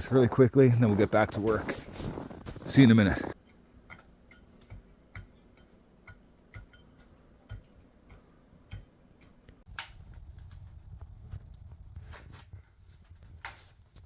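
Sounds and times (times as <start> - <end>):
footsteps crunching in snow: 0.4 - 3.4
steady low rumble: 9.7 - 14.0.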